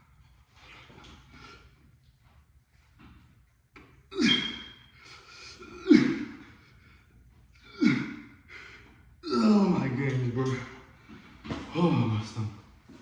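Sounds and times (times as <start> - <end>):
heavy breathing: 5.0 - 9.6.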